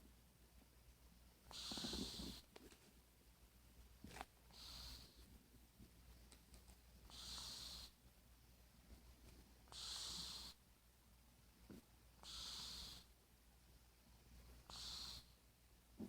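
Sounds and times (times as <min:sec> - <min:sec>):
cat snoring: 0:01.5 - 0:02.5, 0:04.5 - 0:05.2, 0:07.1 - 0:08.0, 0:09.7 - 0:10.6, 0:12.2 - 0:13.1, 0:14.6 - 0:15.4.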